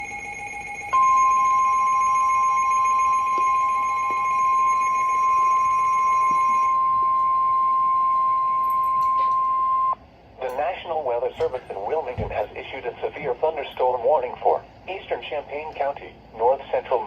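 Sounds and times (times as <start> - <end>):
steady alarm tone: 0.0 - 10.6.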